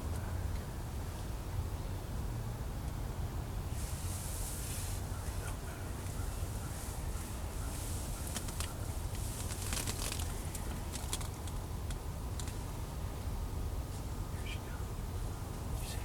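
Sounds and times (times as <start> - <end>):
low rumble with faint hiss: 0.0 - 16.0
soft rustles and clicks: 3.9 - 12.7.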